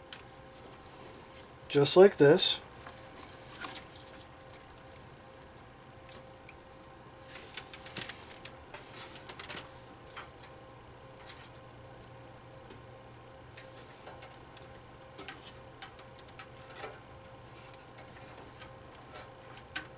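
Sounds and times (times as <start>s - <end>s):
faint steady hum: 0.0s - 19.9s
cables and plastic parts clicking: 7.5s - 10.6s, 13.5s - 17.0s.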